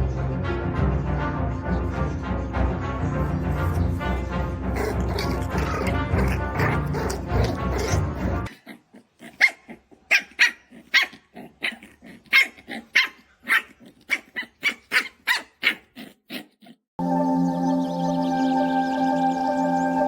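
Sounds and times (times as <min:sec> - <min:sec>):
puppy yipping: 0:04.8 - 0:16.8.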